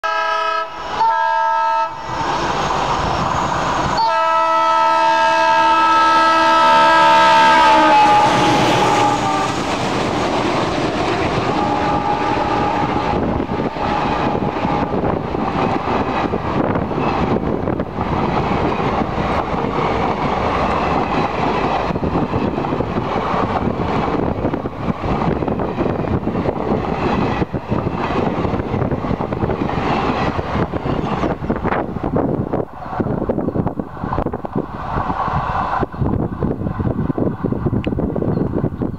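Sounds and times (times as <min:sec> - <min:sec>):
diesel locomotive horn: 0:00.0 - 0:02.3, 0:04.0 - 0:10.3, 0:11.0 - 0:15.2
train rumbling by: 0:00.0 - 0:38.9.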